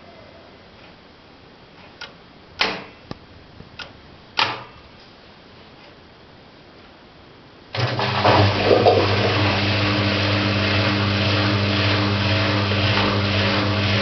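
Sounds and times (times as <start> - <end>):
washing machine motor hum: 7.7 - 14.0.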